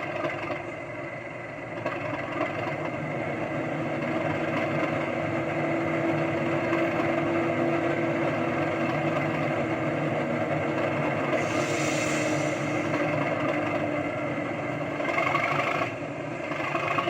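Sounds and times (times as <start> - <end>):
diesel locomotive engine idling: 0.0 - 17.0
short hiss: 11.4 - 12.9.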